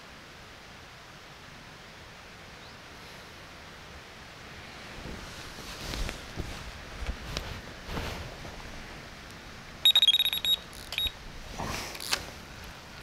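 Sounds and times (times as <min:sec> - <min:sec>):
bite alarm beeping: 0:09.8 - 0:11.2.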